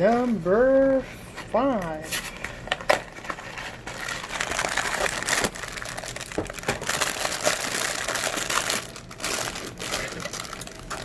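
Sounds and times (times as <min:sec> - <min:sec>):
packaging crinkling and tearing: 0:02.8 - 0:11.0.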